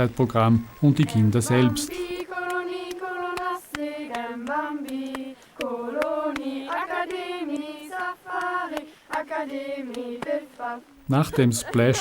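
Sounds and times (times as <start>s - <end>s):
children singing in unison: 1.5s - 11.0s.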